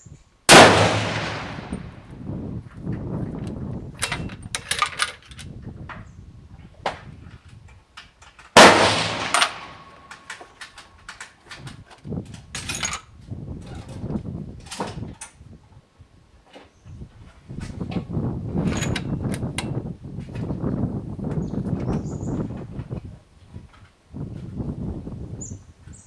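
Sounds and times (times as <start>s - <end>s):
rifle shot: 0.5s - 2.0s, 8.6s - 10.1s
metallic clicks and clatter: 3.4s - 5.6s, 9.2s - 15.4s, 18.6s - 20.5s.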